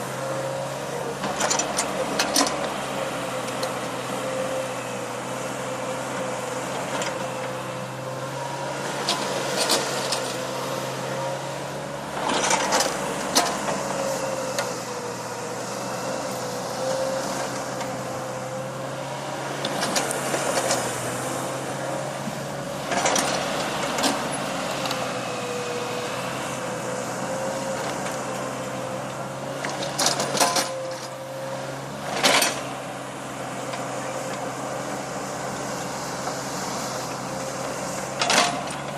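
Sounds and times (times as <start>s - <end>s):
backhoe engine running: 0.0s - 38.9s
digging gear clanking and scraping: 12.2s - 13.8s.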